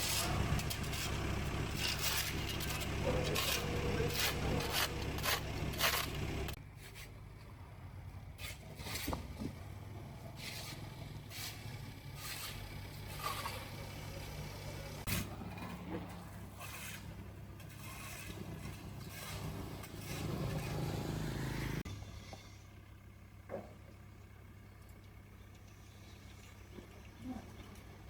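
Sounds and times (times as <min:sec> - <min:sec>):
engine idling: 0:00.0 - 0:06.6, 0:09.4 - 0:28.0
scraping and rustling: 0:00.0 - 0:07.2, 0:10.3 - 0:21.2.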